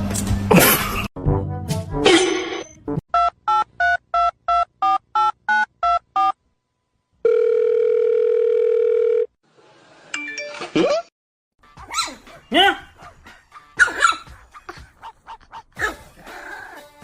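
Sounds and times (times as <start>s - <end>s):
telephone ringing tone: 7.2s - 9.3s.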